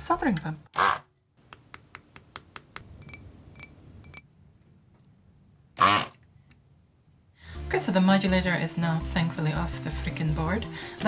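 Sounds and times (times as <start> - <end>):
short loud rasping sound: 5.8 - 6.2.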